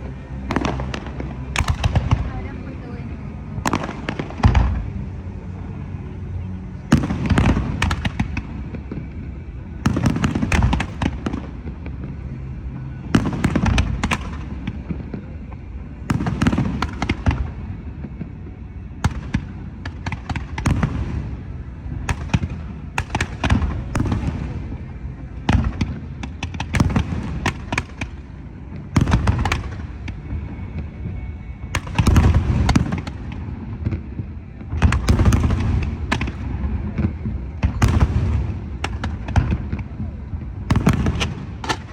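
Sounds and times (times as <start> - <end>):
fireworks bangs and crackle: 0.0 - 3.0, 3.6 - 5.1, 6.9 - 41.9
low rumbling echo: 0.0 - 41.9.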